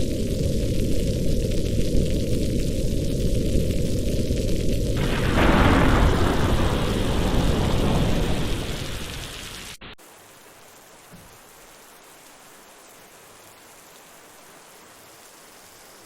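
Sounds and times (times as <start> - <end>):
thunder rumbling: 0.0 - 10.0
heavy rain: 0.0 - 16.0.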